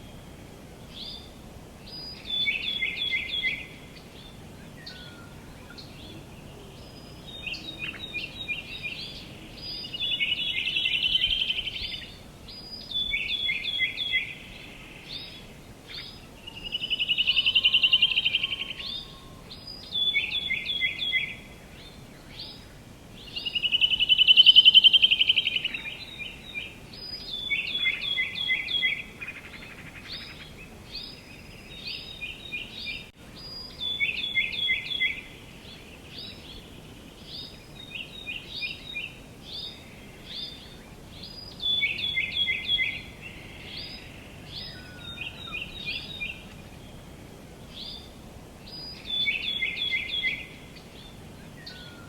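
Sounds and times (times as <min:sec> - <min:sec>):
faint steady hiss: 0:00.0 - 0:52.0
songbirds singing: 0:00.0 - 0:52.0
bird trill: 0:16.4 - 0:21.4.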